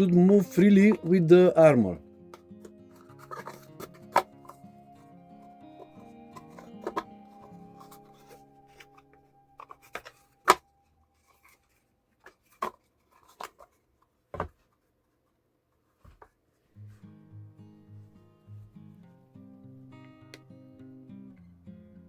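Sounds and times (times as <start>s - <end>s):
strummed guitar music: 0.0s - 10.8s, 16.8s - 22.0s
box sliding in shell: 2.9s - 4.7s, 5.4s - 10.7s
plastic box clicks and knocks: 14.3s - 14.6s.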